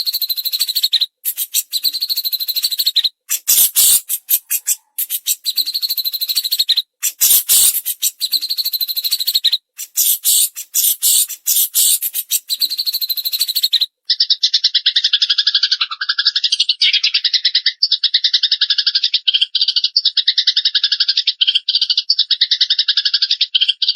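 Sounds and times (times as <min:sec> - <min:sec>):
bird pulsed trill: 0:00.0 - 0:13.7
sparrow scratchy chattering: 0:00.0 - 0:13.9.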